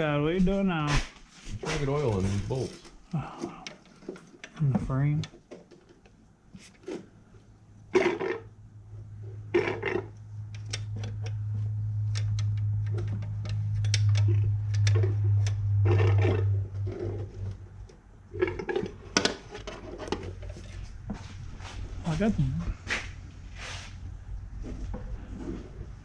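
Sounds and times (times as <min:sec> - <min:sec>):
low steady hum: 0:00.0 - 0:26.0
tools clicking and scraping on bolts: 0:12.0 - 0:20.8.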